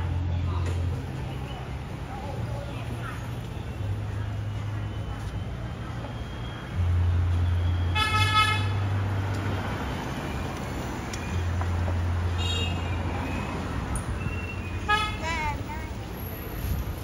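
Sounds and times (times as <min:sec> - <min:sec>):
street traffic rumble: 0:00.0 - 0:17.0
vehicle horn toot: 0:07.9 - 0:08.8, 0:12.4 - 0:12.9, 0:14.8 - 0:15.2.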